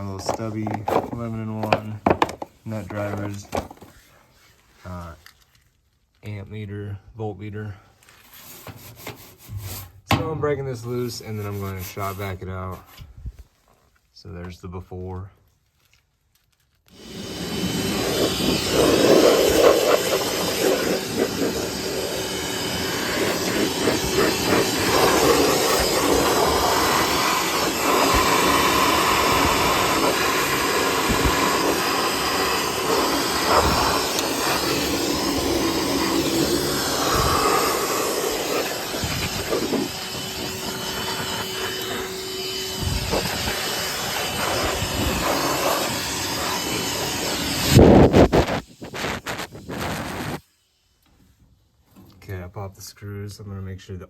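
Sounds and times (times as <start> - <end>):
shop vacuum running: 0.0 - 3.9, 16.9 - 50.4.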